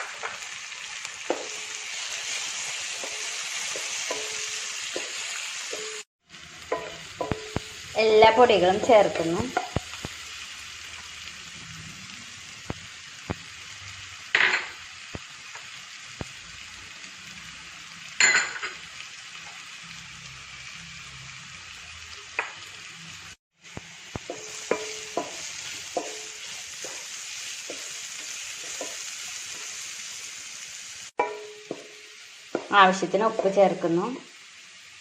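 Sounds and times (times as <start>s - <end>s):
food sizzling in a pan: 0.0s - 35.0s
spoon knocking and scraping pan: 1.2s - 6.0s, 6.7s - 7.8s, 8.6s - 10.1s, 24.1s - 29.8s, 31.2s - 33.6s.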